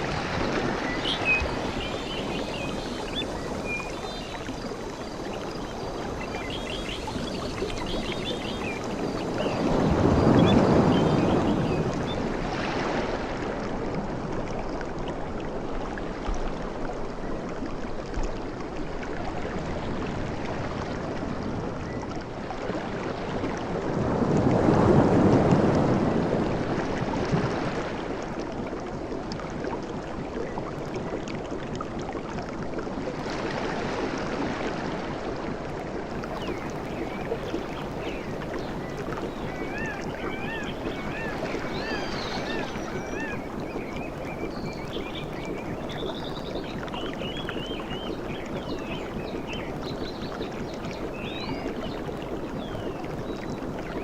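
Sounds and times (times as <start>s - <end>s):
waves breaking on beach: 0.0s - 14.4s, 22.4s - 28.7s, 33.0s - 46.7s
birds whistling calls: 38.0s - 45.3s.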